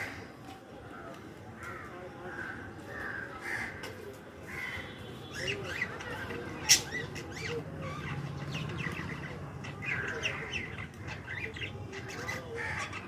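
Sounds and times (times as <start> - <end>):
bird chirping: 5.1 - 13.0.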